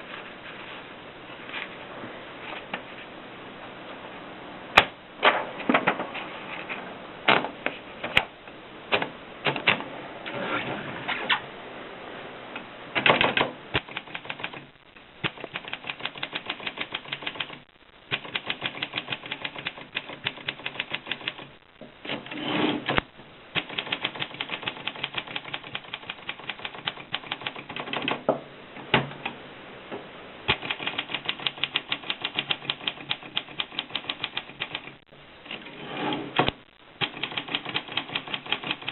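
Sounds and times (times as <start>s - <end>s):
typewriter keystrokes: 8.9s - 9.8s, 13.0s - 21.5s, 23.6s - 28.2s, 30.5s - 35.0s, 37.0s - 38.9s
typewriter clatter: 13.0s - 21.5s, 23.6s - 28.2s, 30.5s - 35.0s, 37.0s - 38.9s.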